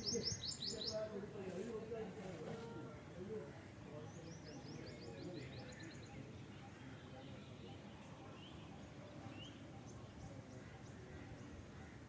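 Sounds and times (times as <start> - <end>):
outdoor background noise: 0.0 - 12.0.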